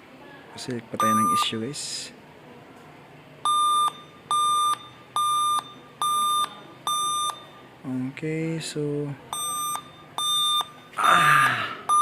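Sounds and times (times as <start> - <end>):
laptop error beeps: 1.0 - 1.6, 3.4 - 7.6, 9.4 - 11.3.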